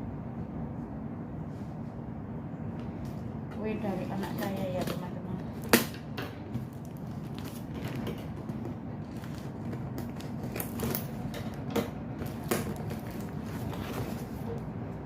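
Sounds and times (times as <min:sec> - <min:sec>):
cardboard parcel crinkling: 0:06.4 - 0:14.7.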